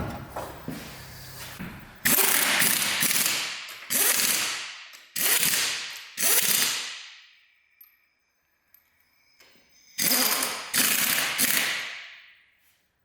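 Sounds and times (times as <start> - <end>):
impact wrench bursts: 2.0 - 6.9, 10.0 - 12.0.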